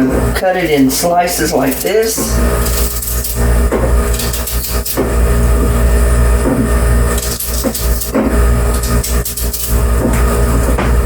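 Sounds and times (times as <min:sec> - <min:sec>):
loud low hum with hiss: 0:00.0 - 0:11.0
knife knocking on cutting board: 0:03.7 - 0:04.0, 0:10.0 - 0:11.0.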